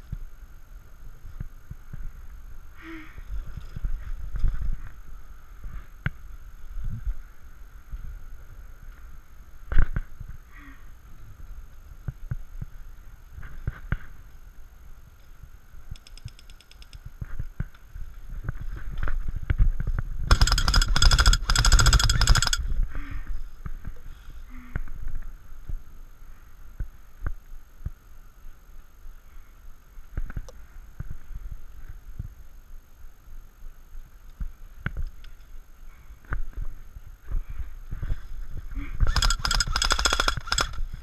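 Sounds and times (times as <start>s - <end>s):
faint clicks and knocks: 15.9s - 17.9s
airsoft gun rapid firing: 20.3s - 22.6s, 39.1s - 41.0s.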